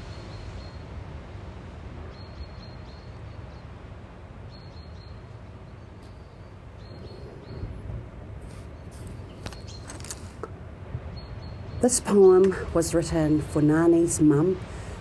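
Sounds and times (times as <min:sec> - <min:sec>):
rumbling wash of noise: 0:06.1 - 0:15.0.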